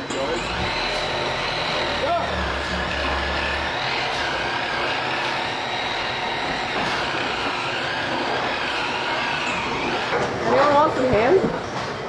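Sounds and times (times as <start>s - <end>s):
pigs squealing: 0.2s - 10.2s.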